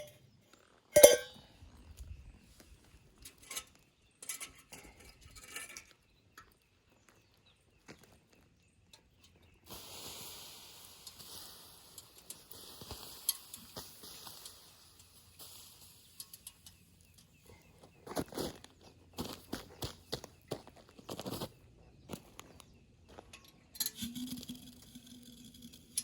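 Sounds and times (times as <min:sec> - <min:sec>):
camp utensils clinking: 0:00.0 - 0:00.3, 0:00.9 - 0:01.6, 0:03.2 - 0:06.7, 0:08.9 - 0:17.9, 0:23.3 - 0:26.0.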